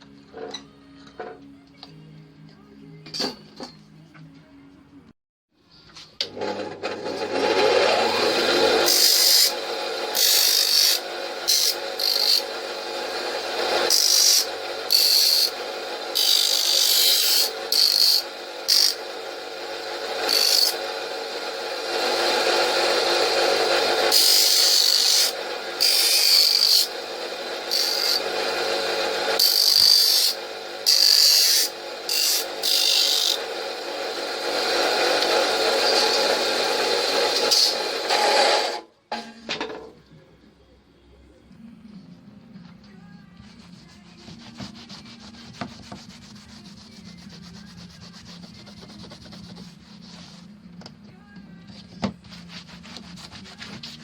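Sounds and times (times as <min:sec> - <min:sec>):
hand tool rasping on metal: 0:13.6 - 0:19.0, 0:43.6 - 0:50.4
rapid scraping strokes: 0:43.4 - 0:50.6.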